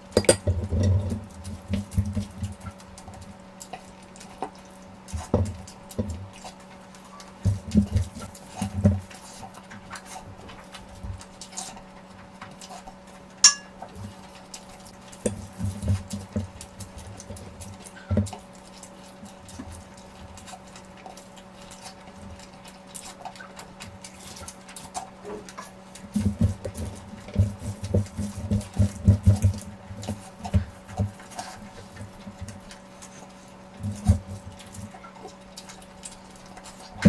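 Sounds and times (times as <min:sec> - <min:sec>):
faint steady hum: 0:00.0 - 0:37.0
dish clinking: 0:13.4 - 0:13.8.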